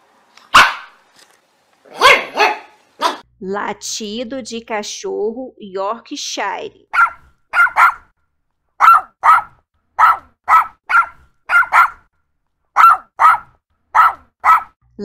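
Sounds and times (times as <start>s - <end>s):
small dog yapping: 0.5s - 1.0s, 1.9s - 3.2s, 6.9s - 8.1s, 8.8s - 12.1s, 12.8s - 14.8s.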